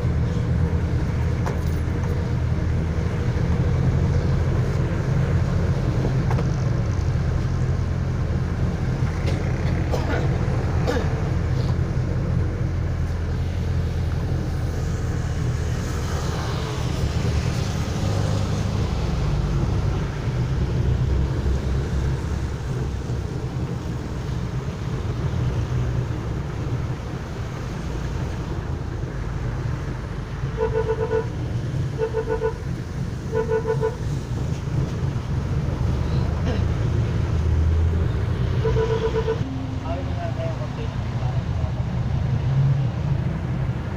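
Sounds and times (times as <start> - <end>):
vehicle engine and road noise: 0.0 - 43.9
vehicle horn tooting: 30.6 - 31.4, 32.0 - 32.6, 33.3 - 34.0, 38.6 - 39.5.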